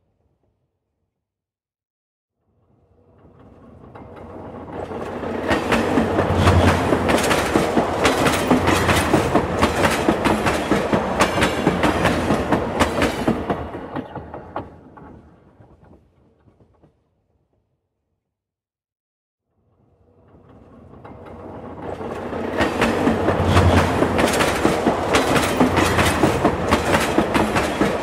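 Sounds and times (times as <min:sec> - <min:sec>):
train rumbling past: 0:02.9 - 0:15.9, 0:20.1 - 0:28.0
wheels clacking over rail joints: 0:03.9 - 0:15.8, 0:20.9 - 0:28.0.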